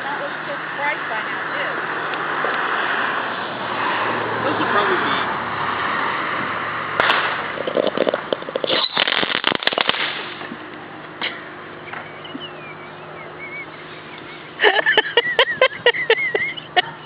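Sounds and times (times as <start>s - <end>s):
firecracker bang: 6.9s - 10.5s
firecrackers crackling pops: 7.0s - 12.1s
firecracker fuse hissing: 8.0s - 10.5s.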